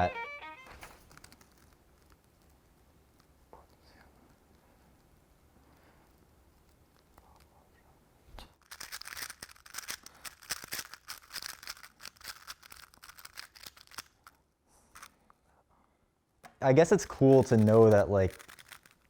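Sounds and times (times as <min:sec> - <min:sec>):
speed cube plastic clicks: 0:08.7 - 0:15.2, 0:16.4 - 0:19.0.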